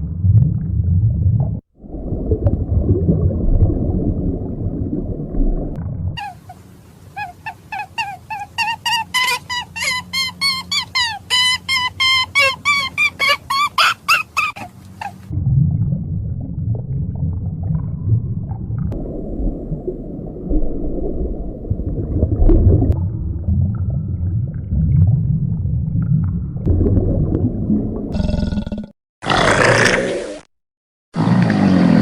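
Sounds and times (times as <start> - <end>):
low rumbling animal vocalization: 28.1 - 30.5.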